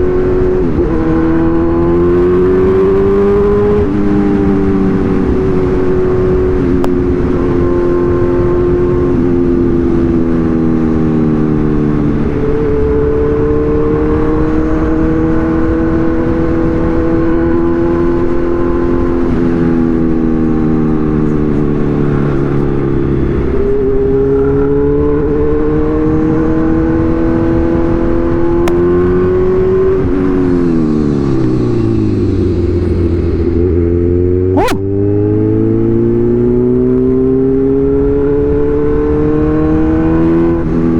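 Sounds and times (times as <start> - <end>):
motorcycle engine revving: 32.0 - 40.5.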